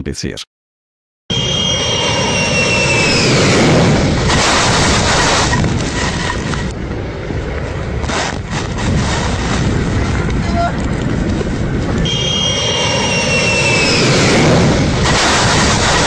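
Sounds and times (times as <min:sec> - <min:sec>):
jet aircraft passing overhead: 0:01.3 - 0:16.0
sharp crackles: 0:08.0 - 0:16.0.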